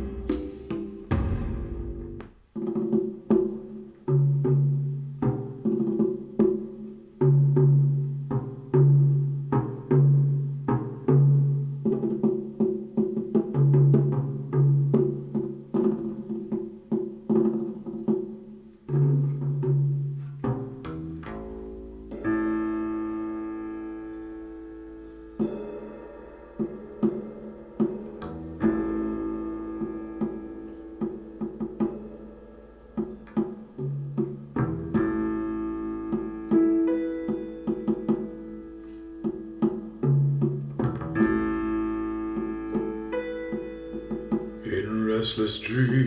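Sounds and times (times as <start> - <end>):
low struck drum-like notes: 0.0 - 2.9.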